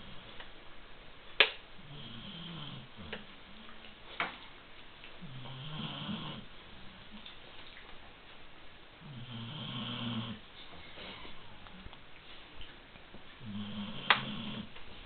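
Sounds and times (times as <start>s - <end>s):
pet snoring: 1.8s - 3.1s, 5.2s - 7.0s, 9.0s - 10.4s, 13.4s - 14.8s.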